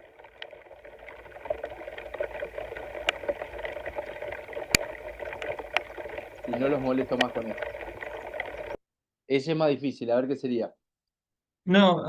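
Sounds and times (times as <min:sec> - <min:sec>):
rain: 0:00.0 - 0:08.8
raindrops clicking on microphone: 0:00.0 - 0:08.8.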